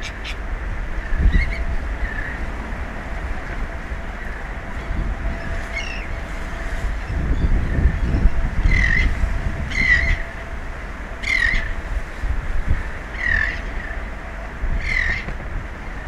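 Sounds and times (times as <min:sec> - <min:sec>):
bird squawking: 0:00.0 - 0:00.4, 0:08.0 - 0:10.3, 0:11.2 - 0:11.8, 0:13.2 - 0:14.0
low rumble: 0:00.0 - 0:16.0.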